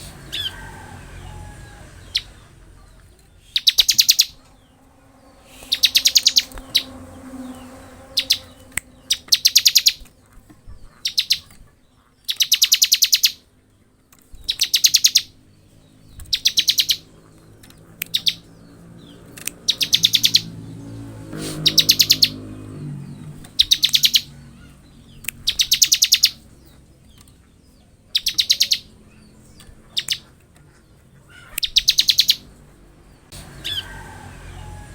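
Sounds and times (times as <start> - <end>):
bird chirps: 1.2 - 13.5, 14.3 - 32.6
bird rattling trills: 3.5 - 10.2, 12.3 - 13.4, 16.3 - 17.5, 18.1 - 20.5, 23.3 - 24.6.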